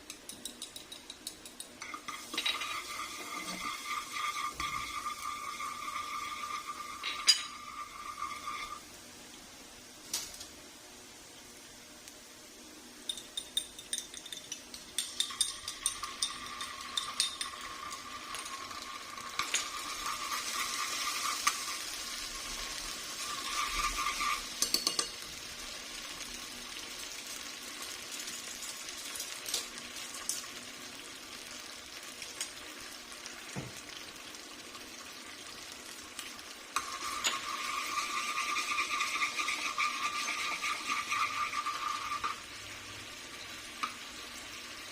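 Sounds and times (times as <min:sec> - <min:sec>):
food sizzling in hot oil: 0:00.0 - 0:44.9
utensil scraping a pan: 0:01.8 - 0:08.8, 0:15.2 - 0:25.1, 0:36.8 - 0:42.5.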